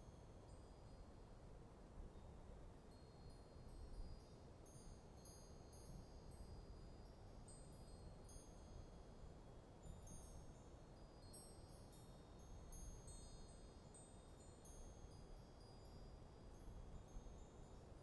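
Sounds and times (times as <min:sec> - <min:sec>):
wind chimes tinkling: 0:09.8 - 0:17.7.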